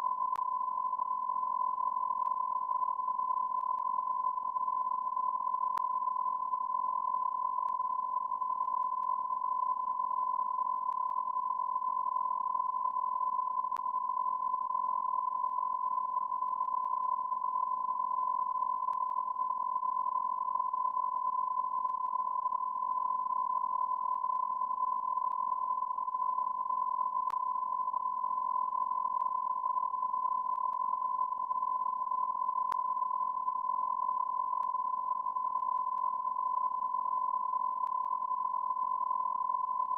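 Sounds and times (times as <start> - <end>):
steady electronic beep tone: 0.0 - 39.9
faint click: 5.7 - 5.9, 10.9 - 11.2, 13.7 - 13.9, 18.9 - 19.2, 27.2 - 27.4.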